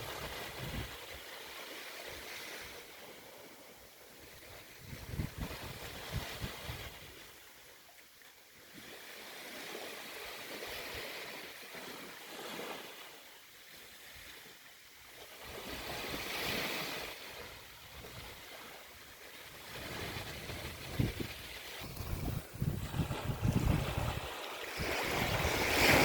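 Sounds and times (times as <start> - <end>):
sea waves washing onto beach: 8.5 - 26.0.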